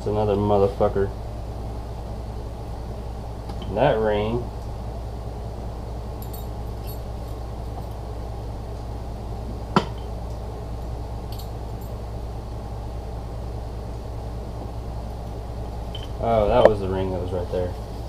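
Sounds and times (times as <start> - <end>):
steady low hum: 0.0 - 18.0
small metal parts clinking: 6.2 - 7.4, 11.3 - 11.9.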